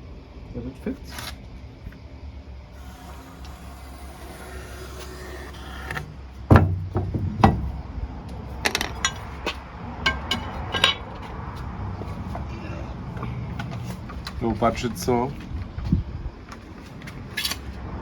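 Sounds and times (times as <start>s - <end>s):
wooden door knocking and clicking: 6.5s - 7.7s
heavy thump: 6.5s - 7.9s.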